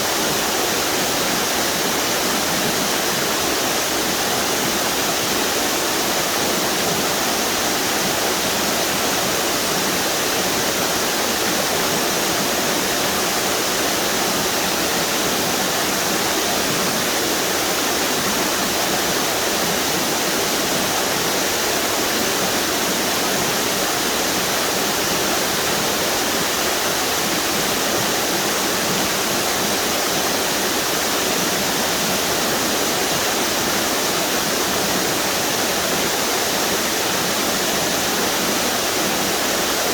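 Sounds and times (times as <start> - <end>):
water rushing over small waterfalls: 0.0 - 39.9.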